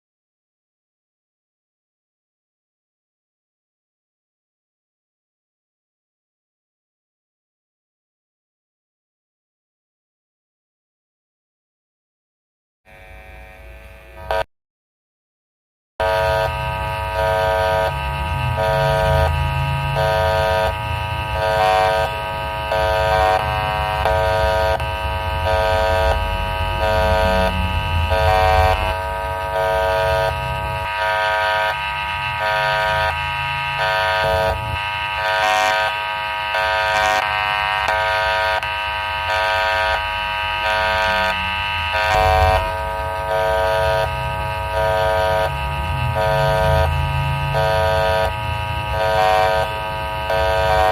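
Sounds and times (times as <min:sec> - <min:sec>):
level crossing alarm: 0:16.0 - 0:50.9.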